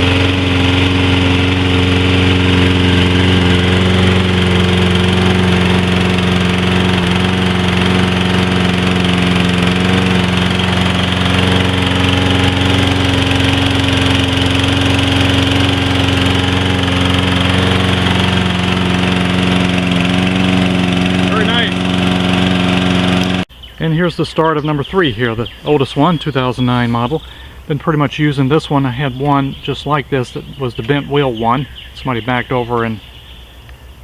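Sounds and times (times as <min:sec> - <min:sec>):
lawn mower engine running: 0:00.0 - 0:23.5, 0:25.3 - 0:34.0.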